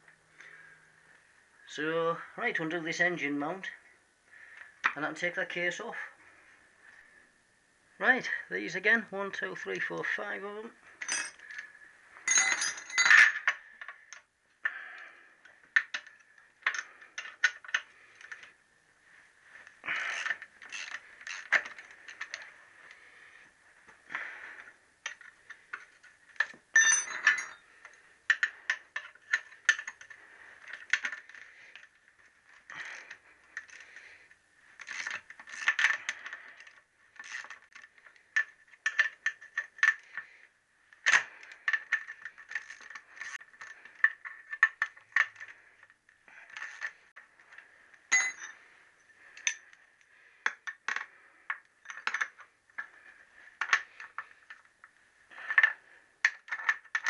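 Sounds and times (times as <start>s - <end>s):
metal parts rattling: 11.0s - 11.7s, 12.3s - 14.0s, 25.1s - 31.9s, 34.8s - 40.2s, 41.0s - 47.0s, 48.1s - 48.6s, 49.3s - 49.7s, 51.8s - 54.6s.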